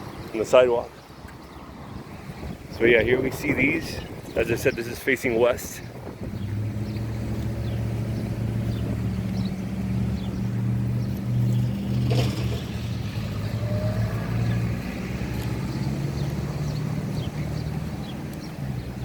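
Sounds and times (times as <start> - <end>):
vehicle engine droning: 5.5 - 19.0.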